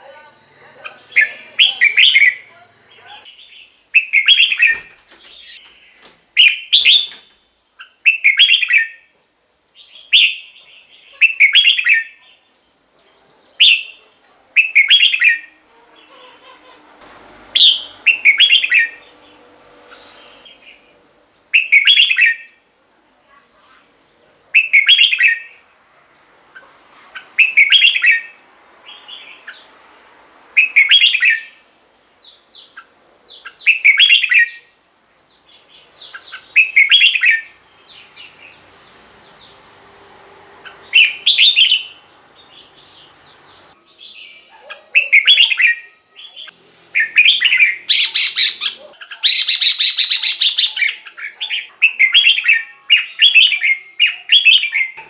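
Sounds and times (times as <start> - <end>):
bulbul singing: 0.0 - 9.1, 13.2 - 16.8, 17.5 - 22.6, 24.5 - 25.6, 26.2 - 30.0, 30.6 - 39.9, 40.6 - 55.0.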